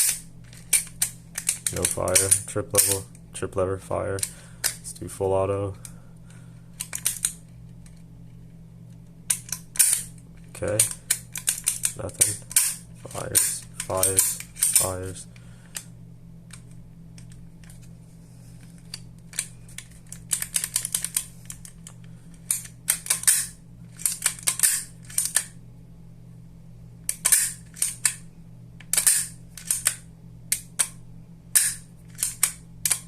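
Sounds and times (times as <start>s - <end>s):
trigger mechanism metal clicks: 0.0s - 3.2s, 6.8s - 7.4s, 8.9s - 15.1s, 27.1s - 28.2s, 28.8s - 31.0s, 31.6s - 33.0s.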